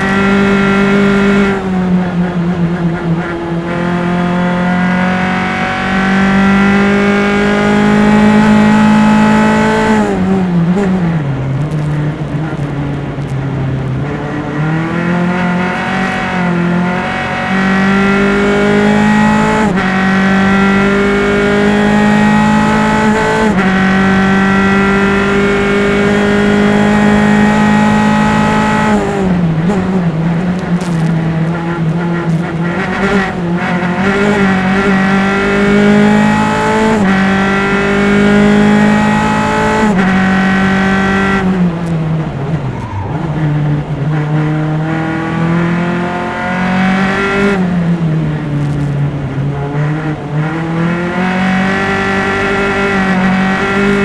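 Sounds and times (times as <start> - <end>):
race car engine shifting gears: 0.0 - 54.0.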